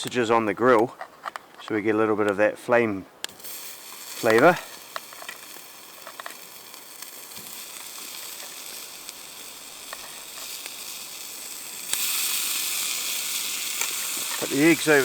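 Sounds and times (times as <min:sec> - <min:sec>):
sausages sizzling on a grill: 0:03.2 - 0:15.0.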